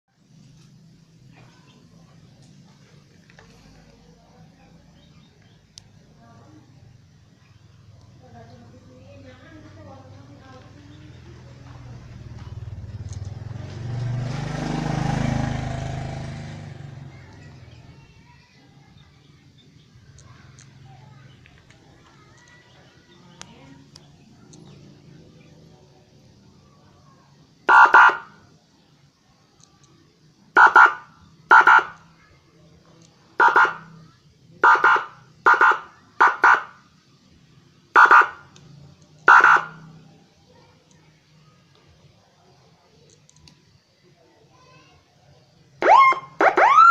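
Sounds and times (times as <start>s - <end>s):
vehicle passing by: 7.7s - 18.3s, 22.7s - 26.7s, 38.4s - 40.6s
electronic siren horn blasts: 27.7s - 28.3s, 30.6s - 31.9s, 33.4s - 33.9s, 34.6s - 36.7s, 38.0s - 38.4s, 39.3s - 39.8s, 45.8s - 46.9s.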